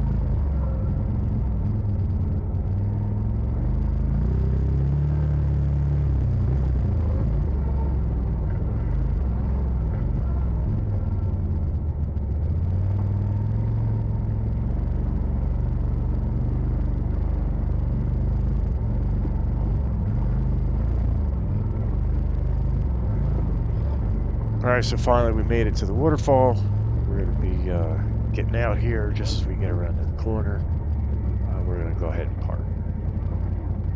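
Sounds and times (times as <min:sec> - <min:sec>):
utility vehicle engine rumbling: 0:00.0 - 0:33.9.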